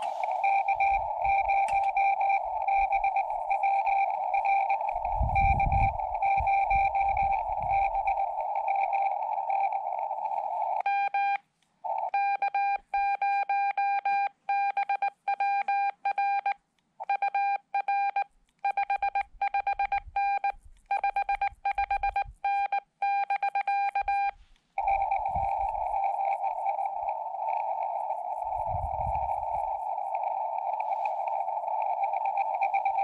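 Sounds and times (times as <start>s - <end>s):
radio receiver hiss: 0.0s - 10.9s, 24.0s - 33.0s
morse code beeps: 0.0s - 11.4s, 12.1s - 33.0s.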